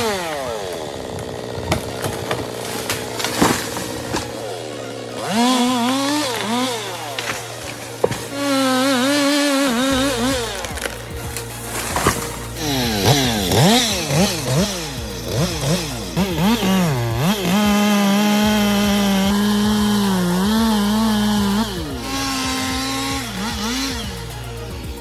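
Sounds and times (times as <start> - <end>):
chainsaw revving: 0.0 - 25.0.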